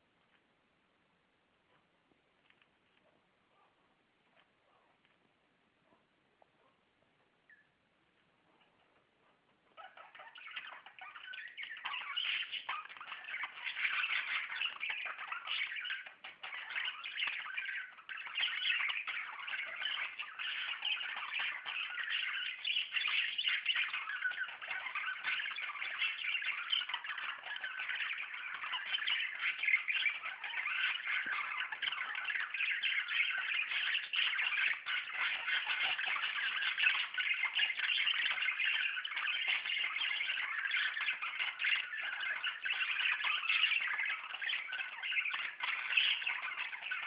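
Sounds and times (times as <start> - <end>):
budgerigars chattering and chirping: 9.6 - 47.0.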